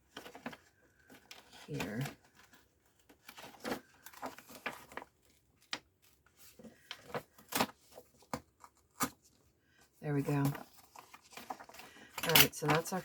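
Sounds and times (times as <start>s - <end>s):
paper crackling and rustling: 0.0s - 9.5s, 10.1s - 13.0s.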